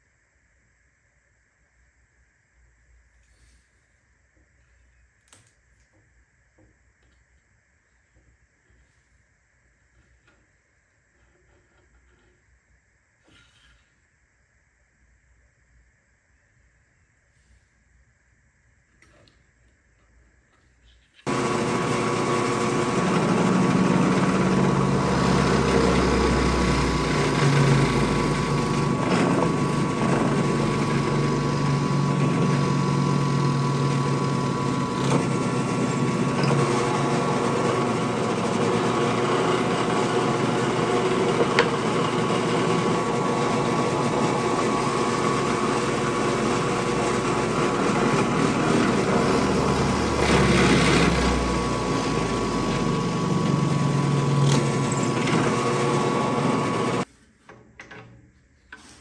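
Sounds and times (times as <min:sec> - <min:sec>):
power tool motor humming: 0:21.3 - 0:57.1.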